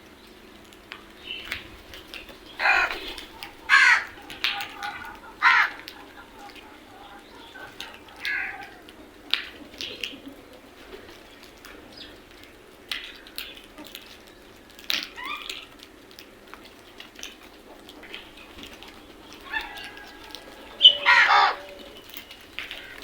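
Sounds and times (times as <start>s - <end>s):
faint steady hum: 0.0s - 14.8s
crows cawing: 2.3s - 9.8s, 18.0s - 23.0s.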